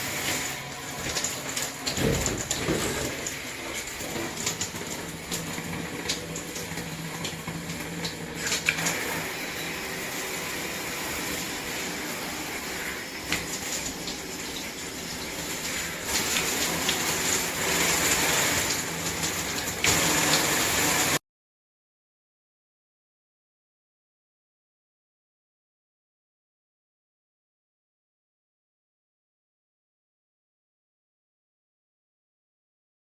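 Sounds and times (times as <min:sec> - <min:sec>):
water spraying from shower head: 0:00.0 - 0:21.2.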